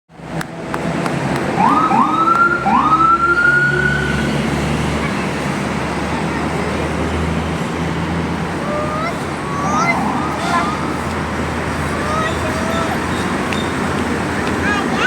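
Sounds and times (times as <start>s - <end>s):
engine humming: 0.1s - 15.0s
road noise: 0.1s - 15.0s
vehicle siren whooping: 1.5s - 4.4s, 8.6s - 11.3s.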